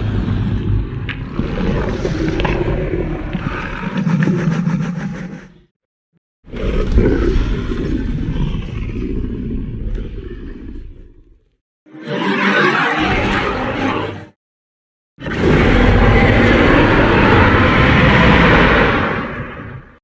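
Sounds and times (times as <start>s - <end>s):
creature roaring growls: 15.2s - 19.7s.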